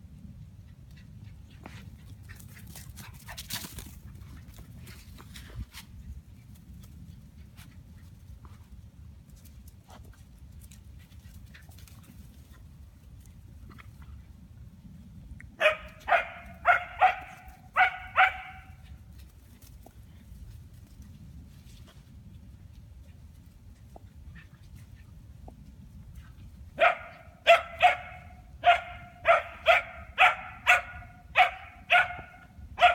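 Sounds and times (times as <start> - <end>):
dog barking: 15.6 - 18.8, 26.8 - 32.9.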